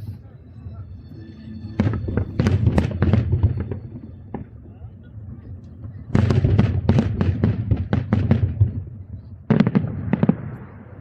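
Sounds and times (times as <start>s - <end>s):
fireworks bursting with sharp bangs: 1.8s - 4.7s, 5.5s - 11.0s.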